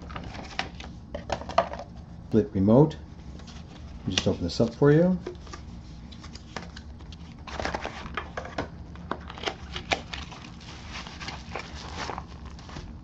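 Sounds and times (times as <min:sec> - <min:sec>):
packaging clicks and rustles: 0:06.4 - 0:13.0.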